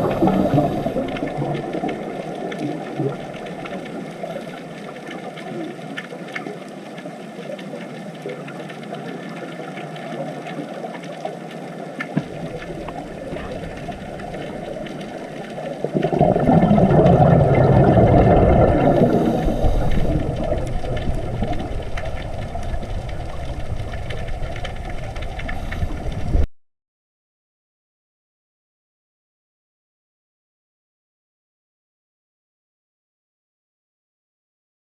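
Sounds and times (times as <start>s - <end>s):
low underwater rumble: 0.0s - 6.3s, 11.9s - 26.5s.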